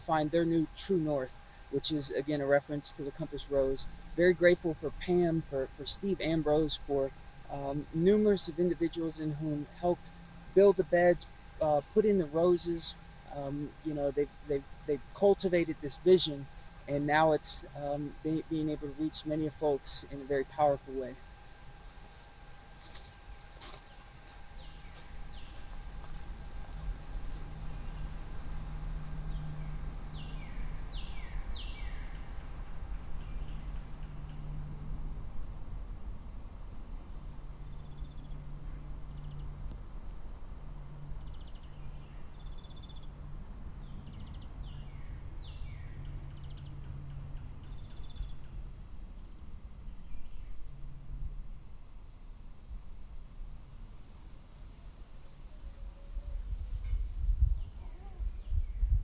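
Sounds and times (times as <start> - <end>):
pulsing insect chirr: 0.0 - 57.8
low hum: 0.0 - 59.0
birds calling: 23.6 - 50.8.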